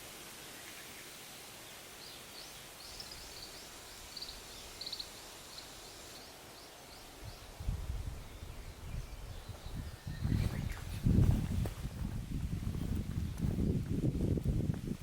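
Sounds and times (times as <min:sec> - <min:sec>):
wind hiss: 0:00.0 - 0:15.0
bird chirping: 0:00.6 - 0:11.0.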